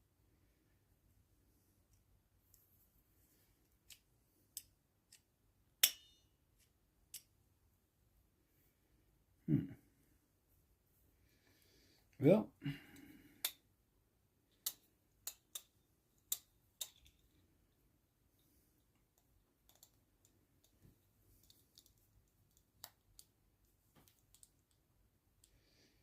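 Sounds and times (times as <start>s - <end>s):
small clicks of pen handling: 19.0s - 20.8s, 21.4s - 23.3s, 24.0s - 24.8s.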